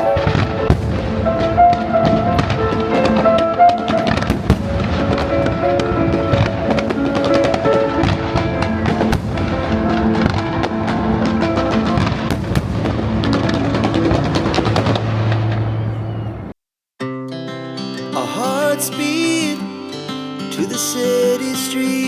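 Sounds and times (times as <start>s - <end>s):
loud music: 0.0s - 14.9s
fireworks bangs and crackles: 0.0s - 16.5s.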